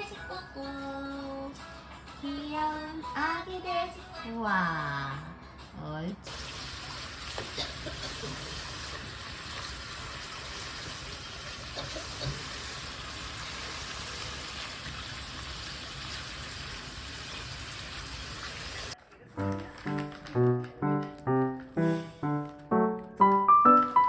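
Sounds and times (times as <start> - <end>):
water running from a tap: 6.3 - 19.0.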